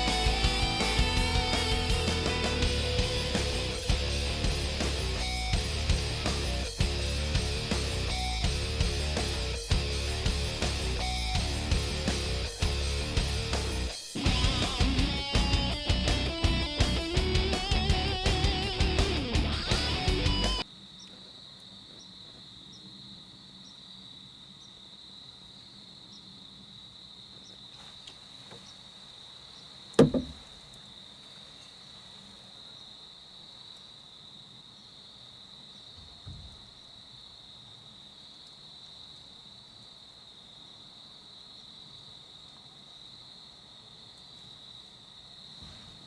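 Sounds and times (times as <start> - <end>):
crickets chirping: 0.0 - 46.0
low thump: 30.0 - 30.4.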